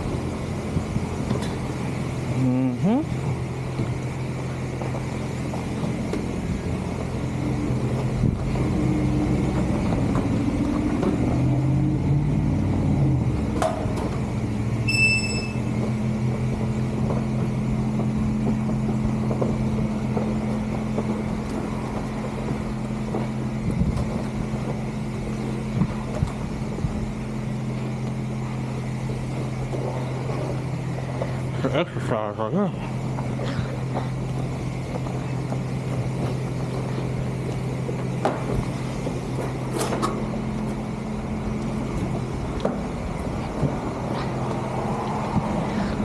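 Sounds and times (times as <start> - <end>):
car engine running: 0.0 - 46.0
short electronic beep: 14.8 - 15.7.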